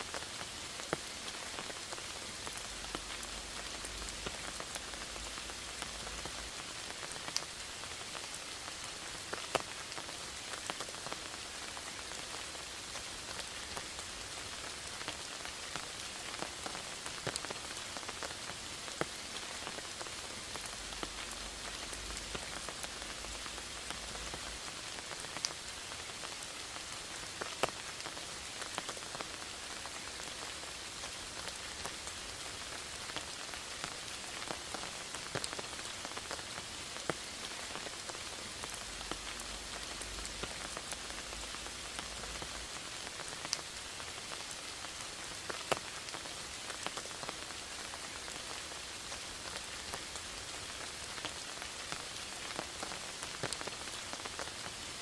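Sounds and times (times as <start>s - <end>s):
rain falling in a forest: 0.0s - 55.0s.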